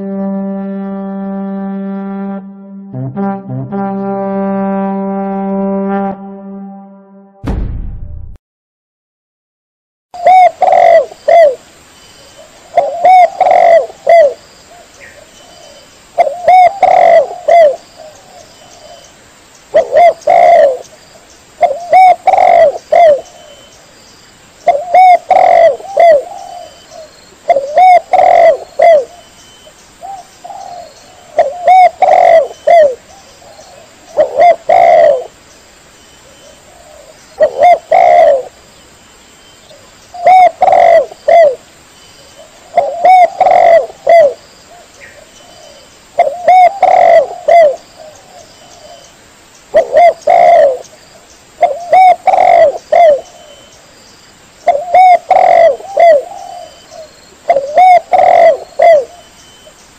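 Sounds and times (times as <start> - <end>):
dove cooing: 10.2 - 11.6, 12.4 - 19.0, 19.7 - 20.8, 21.6 - 23.7, 24.6 - 29.3, 30.0 - 35.3, 36.4 - 38.6, 40.2 - 41.6, 42.4 - 49.1, 49.7 - 50.8, 51.6 - 53.7, 54.7 - 59.3.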